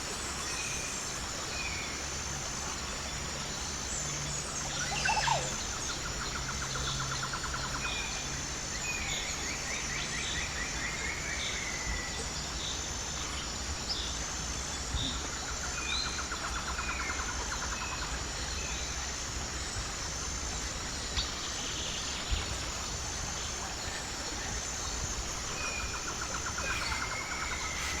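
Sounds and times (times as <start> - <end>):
songbirds calling: 0.0 - 14.2, 20.6 - 28.0
pulsing insect buzz: 21.2 - 28.0.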